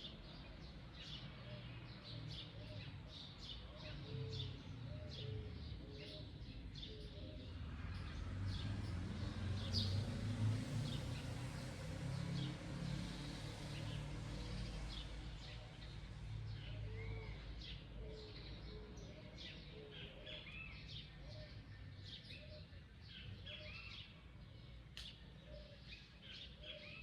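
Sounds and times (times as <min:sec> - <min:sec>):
birds chirping: 0:14.9 - 0:27.0.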